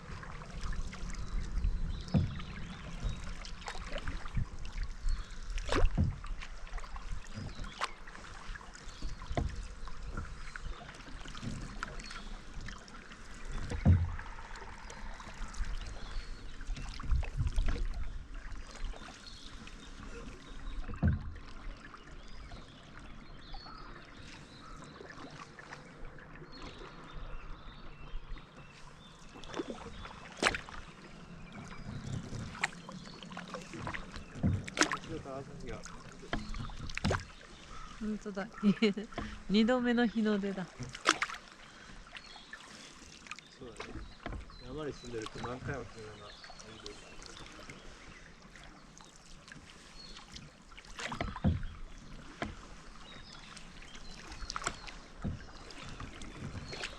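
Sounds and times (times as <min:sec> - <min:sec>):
paddle strokes in water: 0:00.0 - 0:56.9
sharp knocks on canoe: 0:01.8 - 0:04.2, 0:05.6 - 0:06.6, 0:08.9 - 0:10.4, 0:13.5 - 0:14.4, 0:20.8 - 0:21.5, 0:33.7 - 0:35.1, 0:35.9 - 0:37.9, 0:40.7 - 0:41.4, 0:50.9 - 0:53.2.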